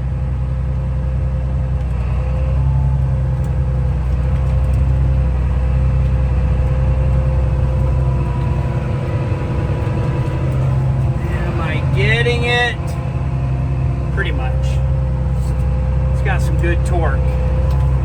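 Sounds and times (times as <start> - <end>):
tractor diesel engine under load: 0.0 - 18.0
thin steady whine: 4.0 - 18.0.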